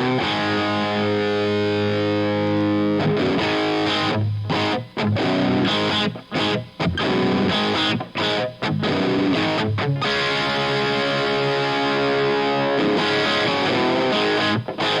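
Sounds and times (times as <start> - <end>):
distorted electric guitar chords: 0.0 - 15.0.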